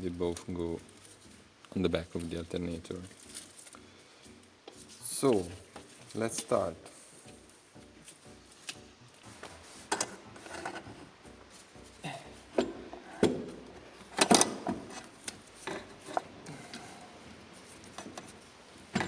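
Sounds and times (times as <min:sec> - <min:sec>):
metal parts knocking and scraping: 0:09.9 - 0:11.0, 0:12.6 - 0:16.4, 0:17.9 - 0:19.0.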